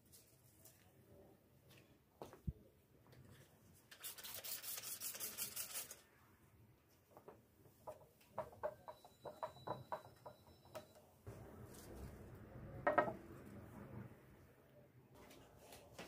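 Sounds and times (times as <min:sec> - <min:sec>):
light taps and clinks: 0:07.2 - 0:11.0.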